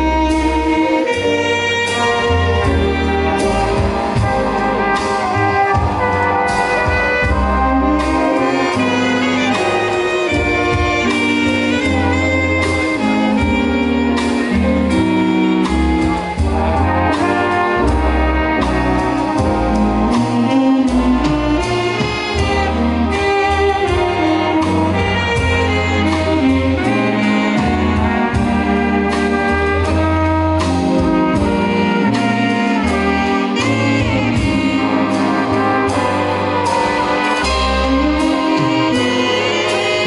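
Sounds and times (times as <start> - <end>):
bass line: 0.0 - 40.0
drum strokes: 0.0 - 40.0
saxophone and brass chords: 0.0 - 40.0.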